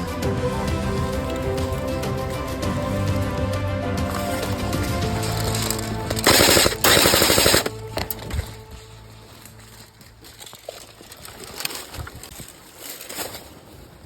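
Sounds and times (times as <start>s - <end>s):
airsoft gun full-auto fire: 6.2s - 7.8s.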